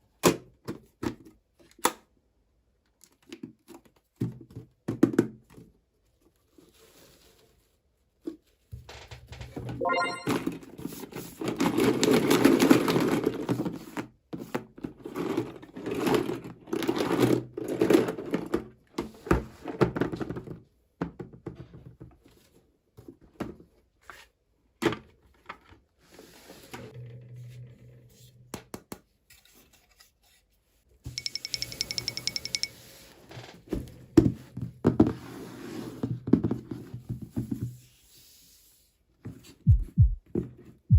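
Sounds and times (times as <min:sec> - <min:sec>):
clicks and taps: 0:31.1 - 0:32.7.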